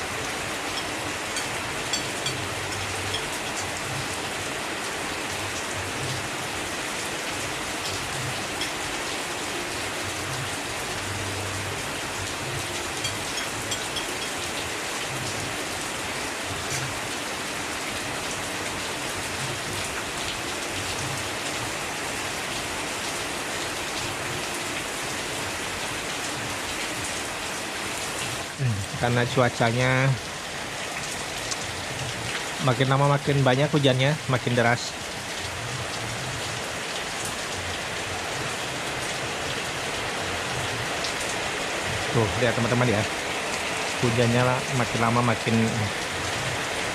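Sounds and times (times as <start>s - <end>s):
heavy rain falling: 0.0s - 46.9s
raindrop ticks: 0.7s - 4.1s.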